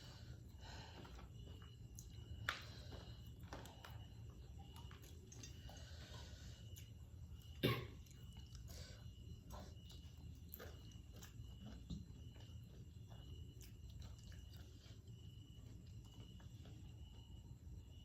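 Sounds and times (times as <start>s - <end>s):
low steady hum: 0.0s - 18.0s
eating crunches: 6.6s - 16.9s.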